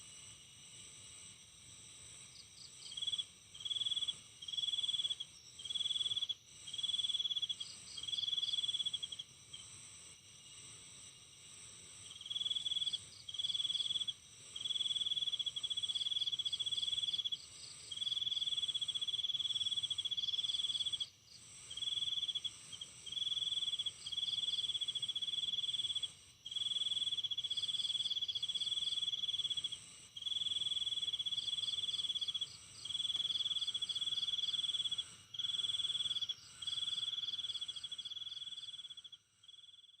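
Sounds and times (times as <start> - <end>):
faint insect chorus: 0.0 - 40.0
loud high insect trill: 26.6 - 39.8.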